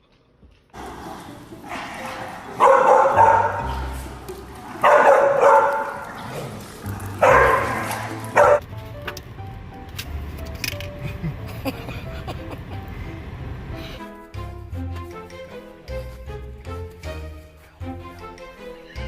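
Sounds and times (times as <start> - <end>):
dog barking: 0.8 - 8.6.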